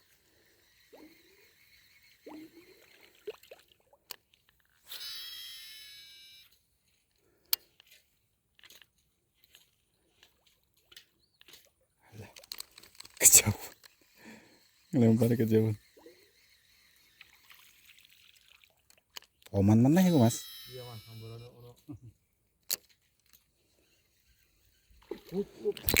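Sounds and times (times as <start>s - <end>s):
fishing line whizzing off reel: 0.0s - 3.7s, 4.8s - 6.6s, 12.4s - 18.3s.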